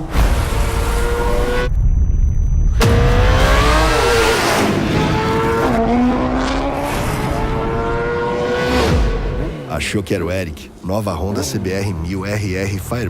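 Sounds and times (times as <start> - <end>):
motorcycle engine revving: 2.8 - 9.7.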